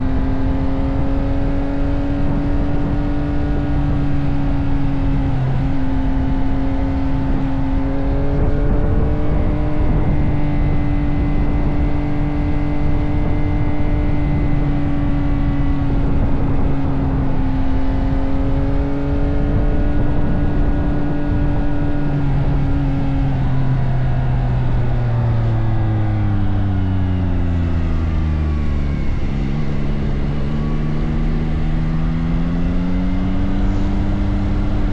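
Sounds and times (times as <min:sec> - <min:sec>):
motorcycle engine running: 0:00.0 - 0:34.9.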